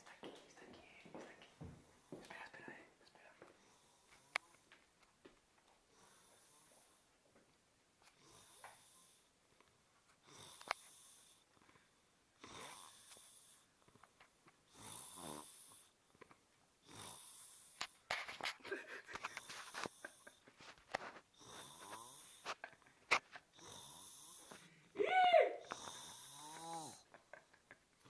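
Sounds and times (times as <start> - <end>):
man snoring: 10.2 - 11.4, 12.4 - 13.6, 14.7 - 15.9, 16.8 - 17.8, 21.4 - 22.5, 23.5 - 24.6, 25.6 - 27.1.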